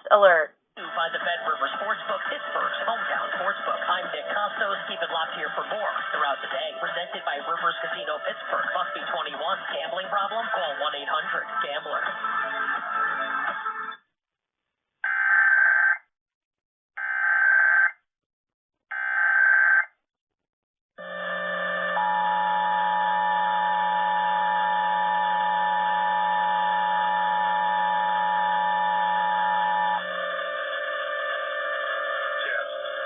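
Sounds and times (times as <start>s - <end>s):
two-tone attention signal: 21.0s - 33.0s.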